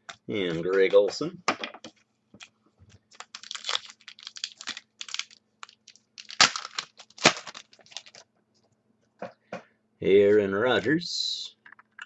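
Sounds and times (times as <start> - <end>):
foil wrappers crinkling: 2.4 - 8.3.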